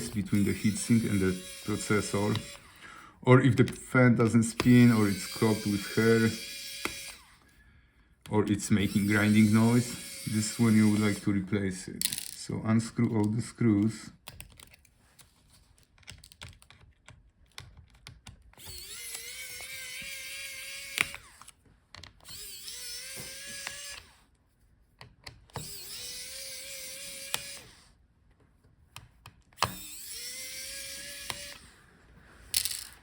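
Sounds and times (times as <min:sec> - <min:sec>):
electric screwdriver whine: 0:00.0 - 0:02.8, 0:04.5 - 0:07.4, 0:08.8 - 0:11.4, 0:18.6 - 0:21.6, 0:22.2 - 0:24.3, 0:25.5 - 0:27.9, 0:29.6 - 0:31.8.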